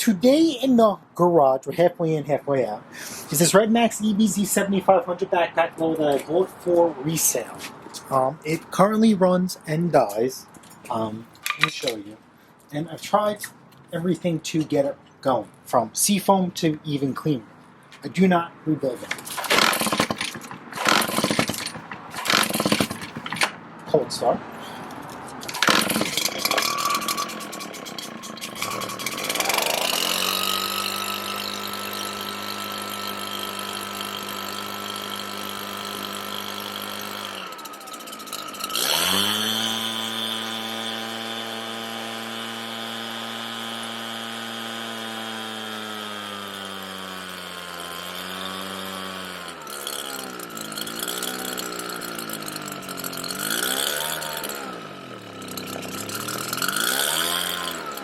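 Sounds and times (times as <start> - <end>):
two-stroke blower engine surging: 2.9 - 8.7, 18.4 - 58.0.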